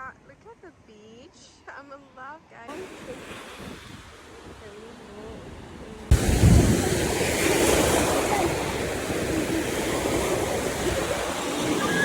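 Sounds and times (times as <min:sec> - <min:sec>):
sea waves washing onto beach: 0:02.7 - 0:12.0
wind rumbling on microphone: 0:02.7 - 0:12.0.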